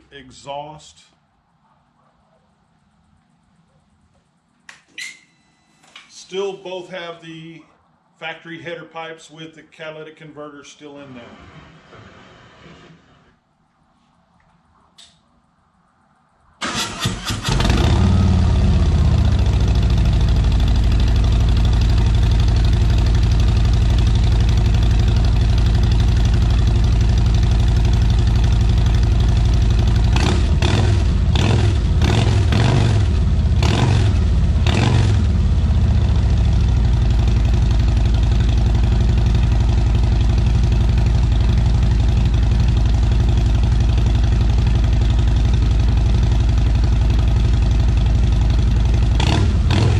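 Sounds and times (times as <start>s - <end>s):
motorcycle engine idling: 17.5s - 49.9s.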